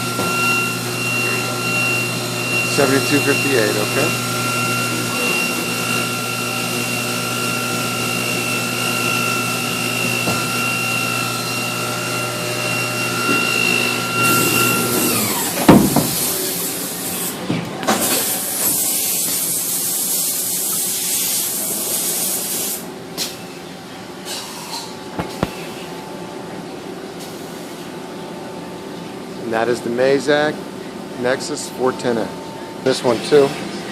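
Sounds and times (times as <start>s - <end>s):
spindle whining and winding down: 0.0s - 17.3s
loud hiss: 18.0s - 22.9s.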